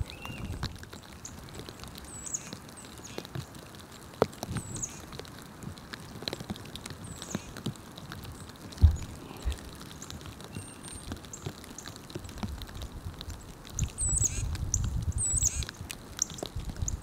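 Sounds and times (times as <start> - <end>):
light ticks and taps: 0.6 - 14.0
low thump: 8.8 - 9.1
songbird chip calls: 13.9 - 17.0.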